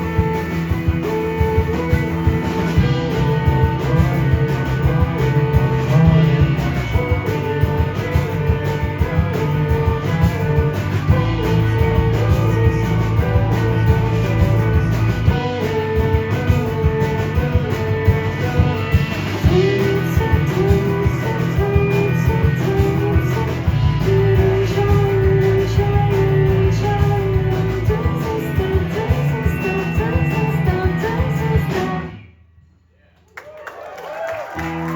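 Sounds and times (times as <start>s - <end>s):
rock band playing live: 0.0s - 32.3s, 34.5s - 34.9s.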